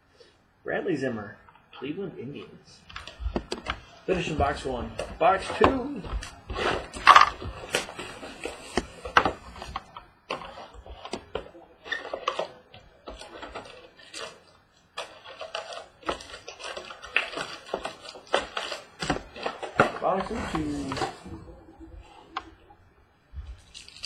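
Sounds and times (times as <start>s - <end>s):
packaging clicks and crinkles: 2.9s - 21.2s, 23.4s - 24.0s.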